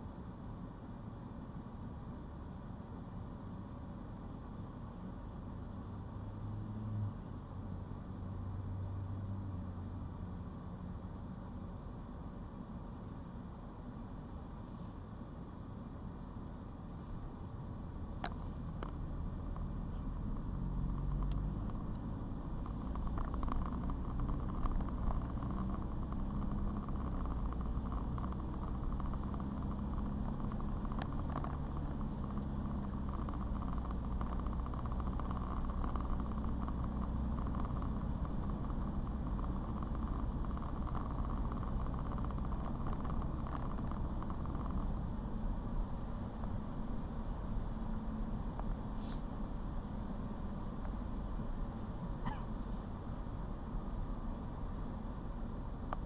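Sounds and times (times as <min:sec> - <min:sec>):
car engine hum: 0:00.0 - 0:56.0
tyres on wet road: 0:18.2 - 0:53.2.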